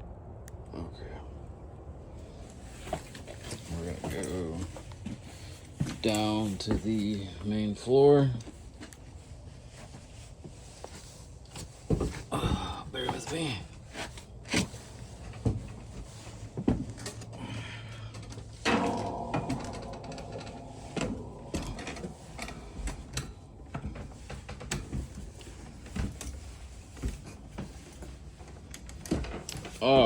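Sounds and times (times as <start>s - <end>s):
footsteps climbing down: 9.9s - 29.8s
steady low noise: 17.4s - 26.0s.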